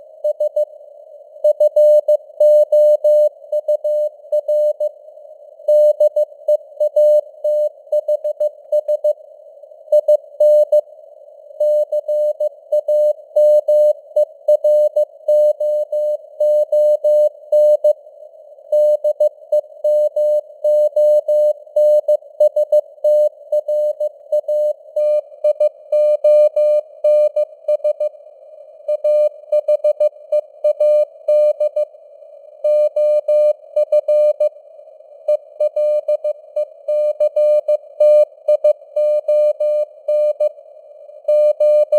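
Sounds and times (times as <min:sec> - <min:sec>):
faint radio hiss: 0:00.0 - 0:41.9
morse code beeps: 0:18.8 - 0:28.1, 0:32.7 - 0:34.5, 0:36.9 - 0:40.5, 0:41.3 - 0:41.9.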